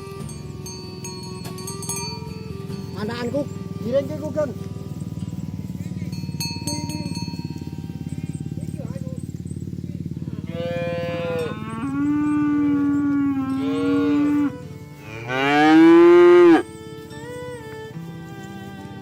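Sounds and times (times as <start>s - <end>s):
cattle mooing: 3.7s - 17.8s.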